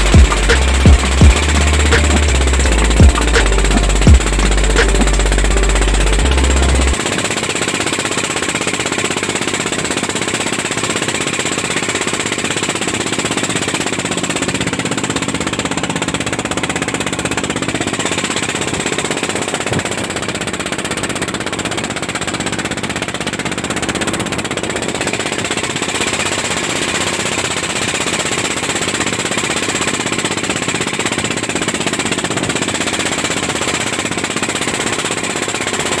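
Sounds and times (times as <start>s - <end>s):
boat diesel engine running: 0.0s - 36.0s.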